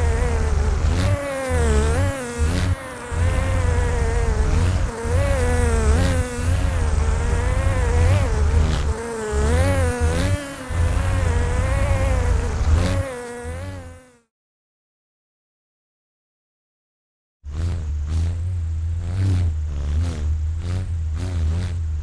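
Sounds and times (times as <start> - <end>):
wavering insect-like buzz: 0.0 - 14.3
low pulsing bass: 3.2 - 12.8.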